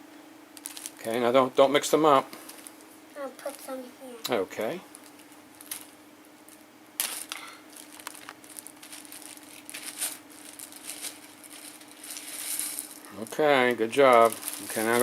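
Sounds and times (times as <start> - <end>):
faint steady hum: 0.0 - 15.0
plastic pieces clicking and rustling: 7.0 - 13.0, 14.1 - 15.0.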